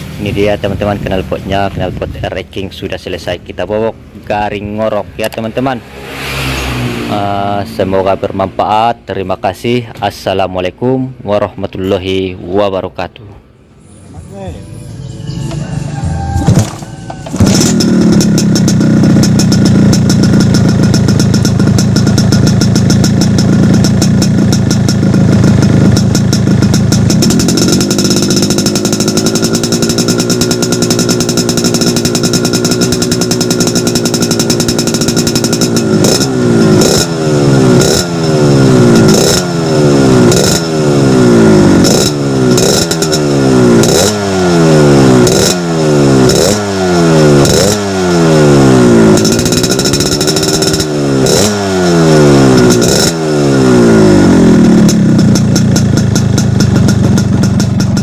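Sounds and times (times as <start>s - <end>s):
two-stroke engine revving: 4.5s - 9.2s, 17.3s - 58.0s.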